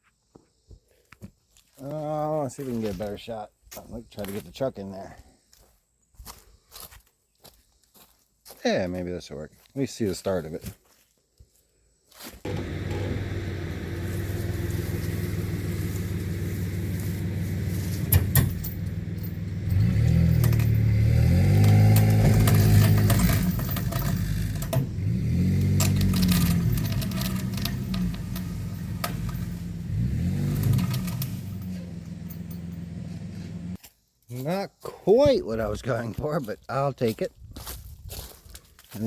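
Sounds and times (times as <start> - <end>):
truck engine revving: 12.5 - 33.8.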